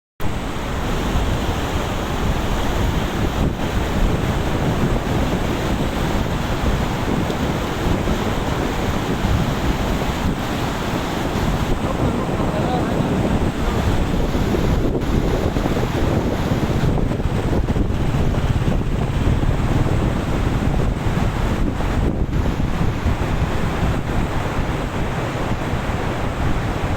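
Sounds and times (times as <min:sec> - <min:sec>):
river rushing: 0:00.2 - 0:26.9
wind buffeting microphone: 0:00.2 - 0:26.9.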